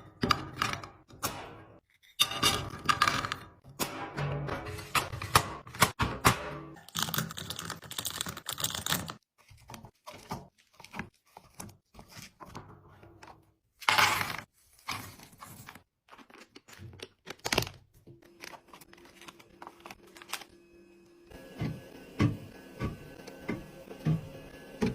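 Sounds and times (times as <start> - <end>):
plastic wrappers crinkling: 6.8 - 10.0, 14.1 - 20.5.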